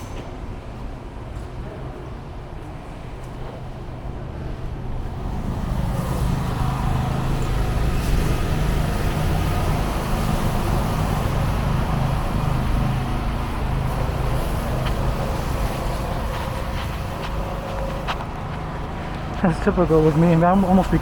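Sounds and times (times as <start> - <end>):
road traffic noise: 0.0 - 21.0
vehicle engine humming: 3.7 - 21.0.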